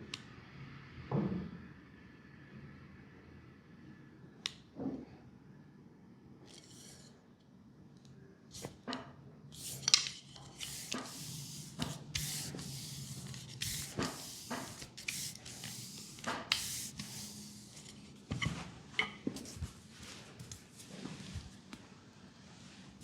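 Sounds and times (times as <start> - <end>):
hands rubbing skin: 10.6 - 17.7.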